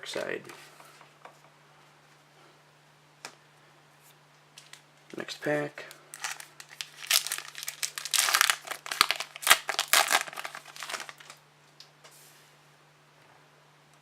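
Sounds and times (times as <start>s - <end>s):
wrapper being torn and crinkled: 6.1s - 11.4s.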